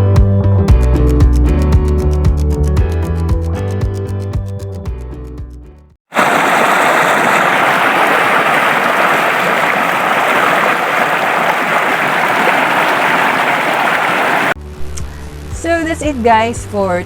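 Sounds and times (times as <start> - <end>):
loud rushing noise: 6.2 - 14.6.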